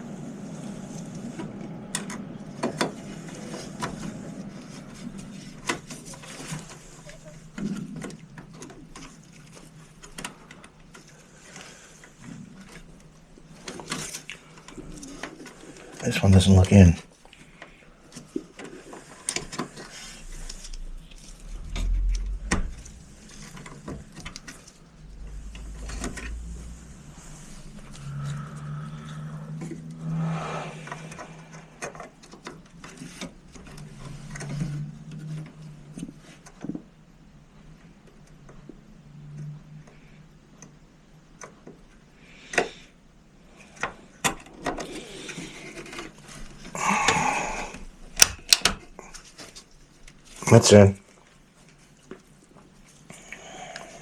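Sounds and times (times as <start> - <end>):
low steady hum: 0.0 - 11.2, 19.5 - 36.4
rustling or scraping: 0.0 - 16.5, 17.2 - 36.8.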